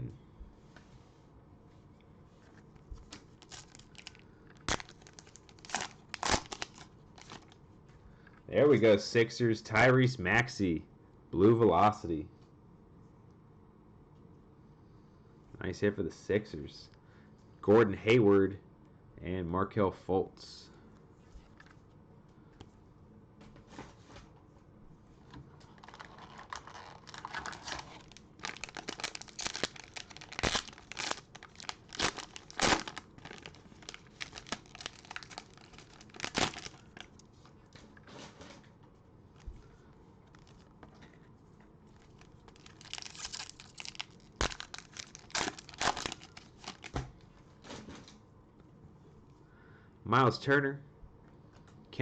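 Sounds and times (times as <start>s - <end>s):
cellophane wrappers tearing and crinkling: 3.0s - 7.6s, 25.7s - 37.3s, 40.3s - 40.7s, 41.9s - 47.0s.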